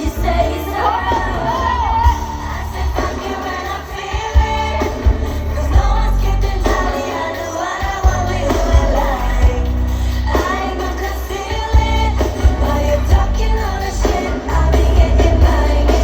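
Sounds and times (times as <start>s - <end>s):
pop song with female singing: 0.0s - 16.0s.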